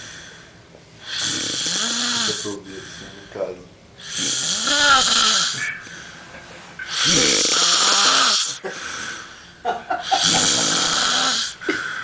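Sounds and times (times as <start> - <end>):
man snoring: 1.1 - 3.1, 4.0 - 5.6, 6.9 - 9.4, 10.0 - 12.0.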